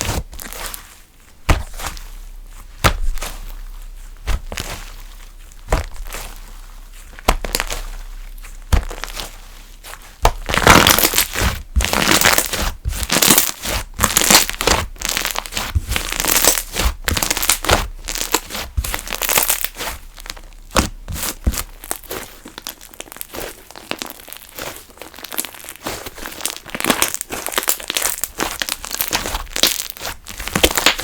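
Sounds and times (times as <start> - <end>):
slime crackling when squeezed: 2.7 - 31.0.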